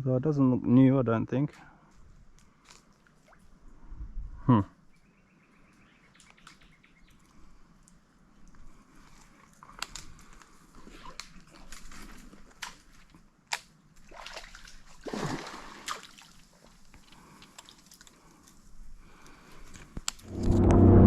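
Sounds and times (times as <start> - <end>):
water splashing and sloshing: 2.7 - 3.6, 10.8 - 18.6
swoosh: 20.2 - 21.0.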